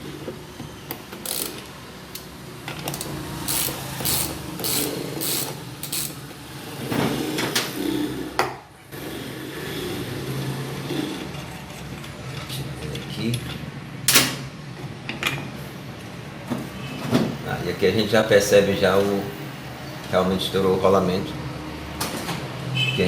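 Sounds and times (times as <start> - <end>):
ratchet wrench clicking: 1.1 - 6.3
metal rubbing: 2.9 - 6.2.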